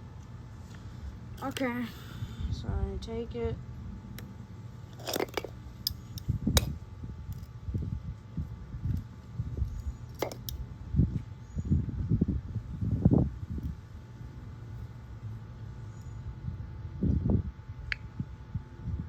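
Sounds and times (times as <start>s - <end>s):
pliers and small parts clicking: 5.0s - 6.7s, 9.7s - 10.6s.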